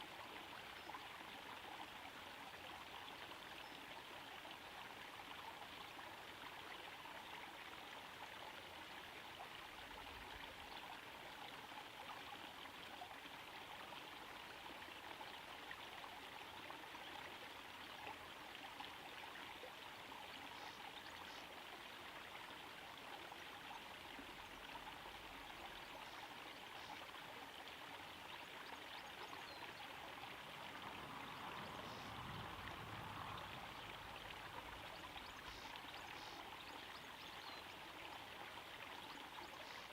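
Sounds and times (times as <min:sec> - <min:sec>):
waterfall splashing into pond: 0:29.8 - 0:36.4.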